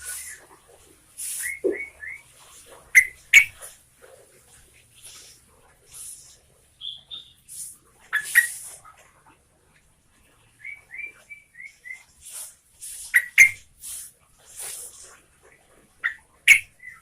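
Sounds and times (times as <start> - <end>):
hissy bird chatter: 0.0 - 9.4, 10.1 - 17.0
bird singing: 1.4 - 2.3, 6.8 - 7.5, 10.5 - 12.2.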